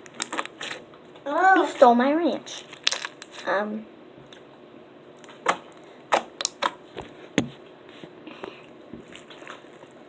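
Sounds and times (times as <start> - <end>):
slime clicking and popping: 0.0 - 0.6, 2.6 - 3.4, 5.2 - 6.8.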